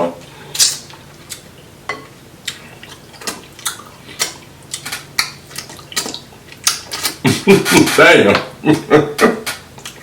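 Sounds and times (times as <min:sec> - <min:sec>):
wet chewing clicks and smacks: 0:02.4 - 0:07.2.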